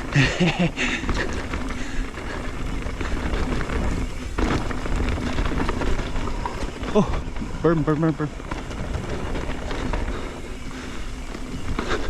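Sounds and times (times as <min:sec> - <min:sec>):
bike tyre and chassis noise: 0:00.0 - 0:12.0.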